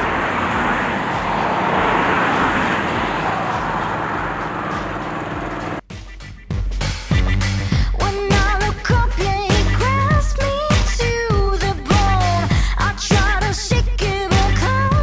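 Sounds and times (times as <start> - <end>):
passenger train running: 0.0 - 5.8
music with a beat: 5.9 - 15.0.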